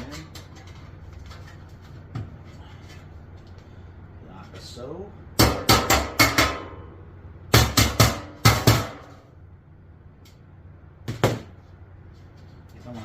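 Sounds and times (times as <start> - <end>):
hammer striking sheet metal: 5.4 - 6.9, 7.5 - 9.2.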